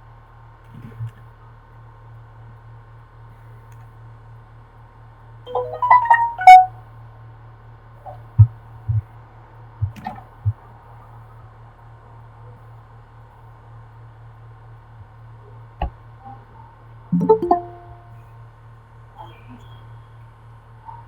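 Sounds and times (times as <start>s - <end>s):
electronic jingle: 5.5s - 6.7s, 17.2s - 18.2s
soft low thumps: 8.4s - 9.1s, 9.8s - 10.6s.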